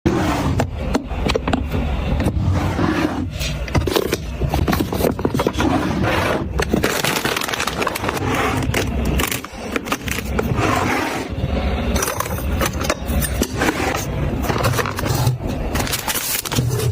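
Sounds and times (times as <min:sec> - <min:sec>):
packaging scraping and crackling: 0:03.3 - 0:11.3, 0:11.9 - 0:16.9.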